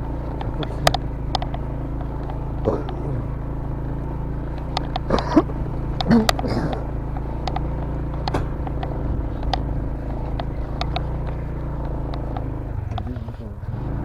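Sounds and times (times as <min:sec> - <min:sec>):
sharp clicks and knocks: 0:00.0 - 0:13.4
motorcycle engine running: 0:00.0 - 0:14.0.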